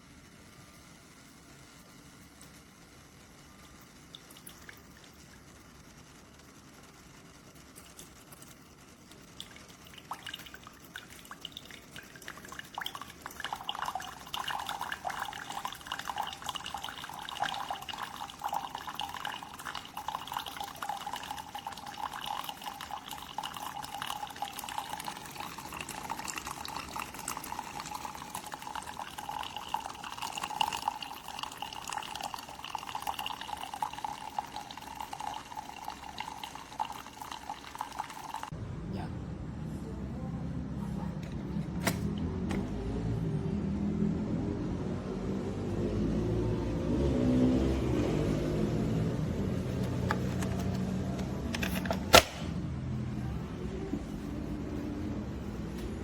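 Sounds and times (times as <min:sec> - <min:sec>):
coffee maker dispensing coffee: 0:00.2 - 0:38.5, 0:41.1 - 0:42.9, 0:49.4 - 0:52.6.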